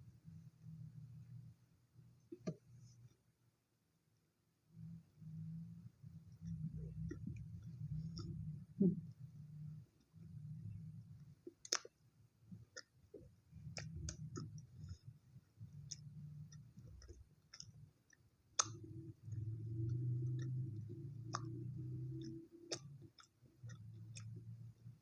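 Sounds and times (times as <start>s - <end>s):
mouth clicks and smacks: 6.4s - 9.2s, 10.0s - 24.9s
chewing toasted bread: 6.4s - 25.0s.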